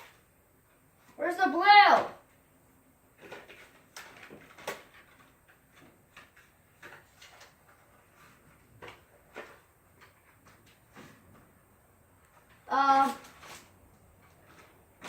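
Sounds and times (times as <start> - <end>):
rummaging through a drawer: 3.2 - 11.5, 13.0 - 15.0.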